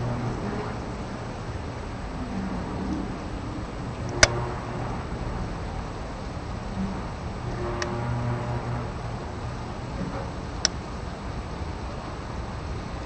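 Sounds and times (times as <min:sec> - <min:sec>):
low wavering hum: 0:00.0 - 0:13.0.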